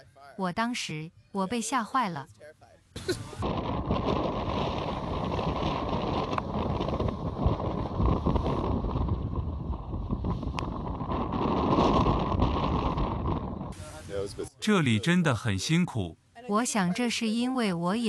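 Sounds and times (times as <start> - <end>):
rush of wind and water: 3.0 - 14.2
wind buffeting microphone: 3.1 - 14.3.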